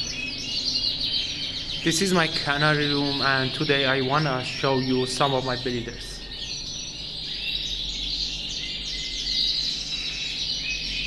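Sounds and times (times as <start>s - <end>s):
canaries singing: 0.0s - 11.0s.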